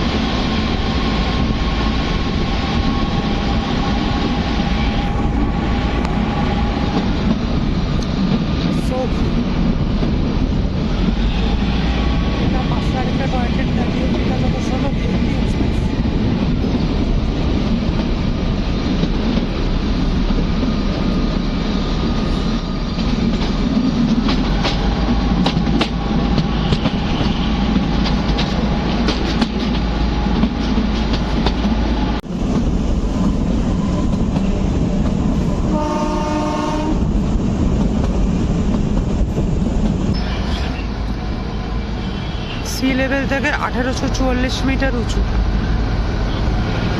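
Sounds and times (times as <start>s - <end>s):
train rumble: 0.0s - 46.9s
train horn: 35.7s - 37.1s.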